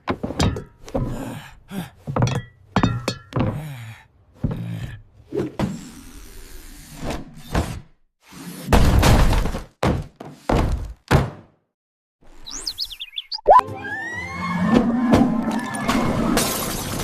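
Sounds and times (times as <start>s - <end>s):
cartoon thunks and knocks: 8.7s - 11.6s.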